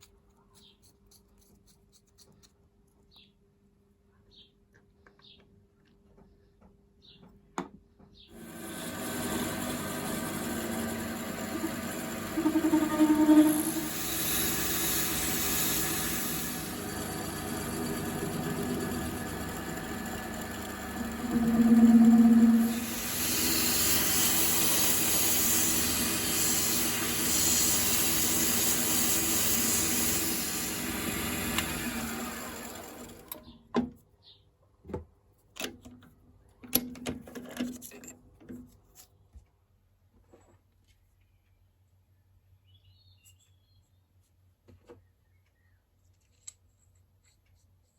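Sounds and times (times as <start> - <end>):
bench-top lathe running: 8.4 - 33.4.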